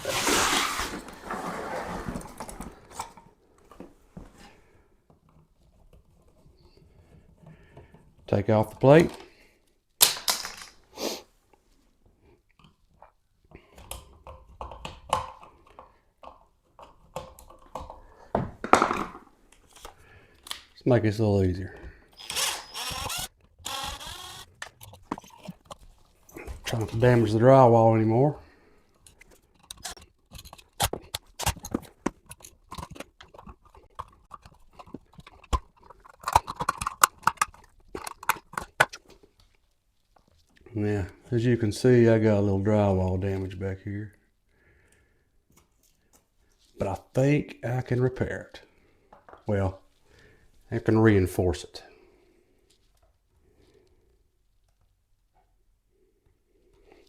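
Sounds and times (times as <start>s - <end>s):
loud scrapes: 0.0s - 2.8s
screw and plastic plate clicking: 29.6s - 39.0s.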